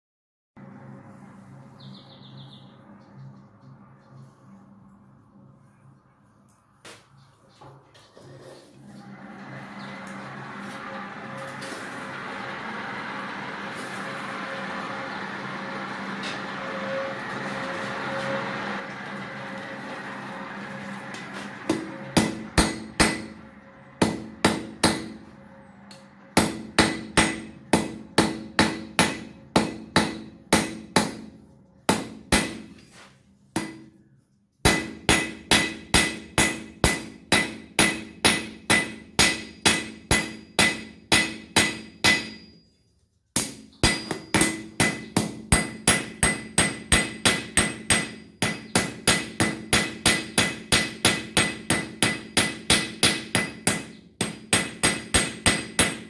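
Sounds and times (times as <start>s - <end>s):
hammer striking steel on anvil: 21.1s - 32.9s, 33.6s - 34.0s, 34.6s - 42.6s, 43.4s - 56.0s.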